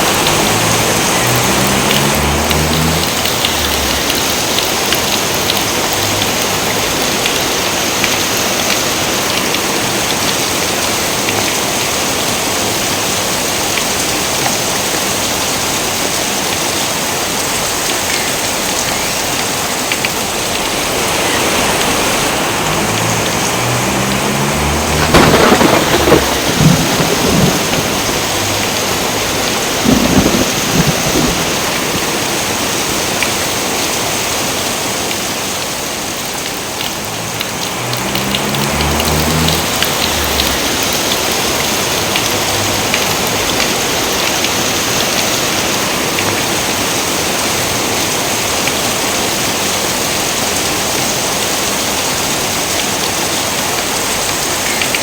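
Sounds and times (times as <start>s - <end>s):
thunder claps and rumbles: 0.0s - 8.4s, 22.6s - 32.5s, 36.5s - 46.8s
heavy rain: 0.0s - 55.0s.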